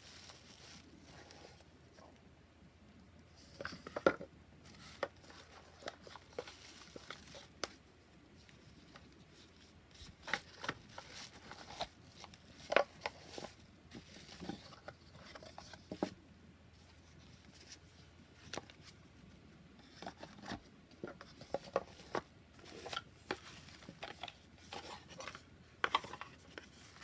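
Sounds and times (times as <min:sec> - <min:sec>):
card box handling taps and rustles: 0:10.0 - 0:16.2, 0:19.9 - 0:27.0.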